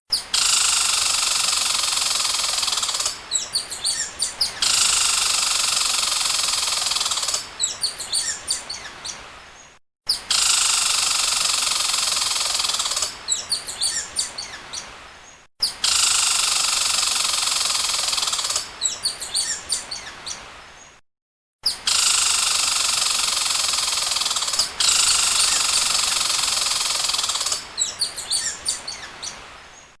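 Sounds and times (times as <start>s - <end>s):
squirrel chattering: 0.3s - 8.3s, 10.3s - 14.0s, 21.9s - 28.8s.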